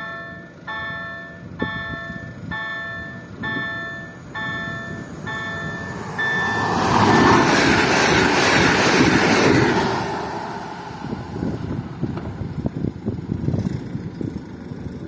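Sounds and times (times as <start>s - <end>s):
electronic warning tones: 0.0s - 7.5s
electric train pulling away: 0.0s - 14.9s.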